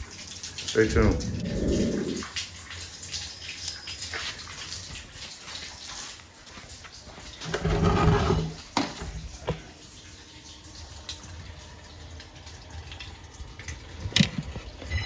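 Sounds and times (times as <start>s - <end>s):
dog vocalizing: 0.8s - 2.4s.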